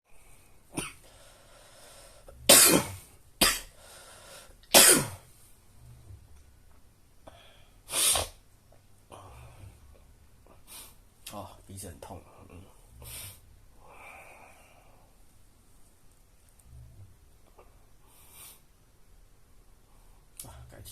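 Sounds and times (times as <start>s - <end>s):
person coughing hard: 0.8s - 1.0s, 2.4s - 3.7s, 4.7s - 5.2s.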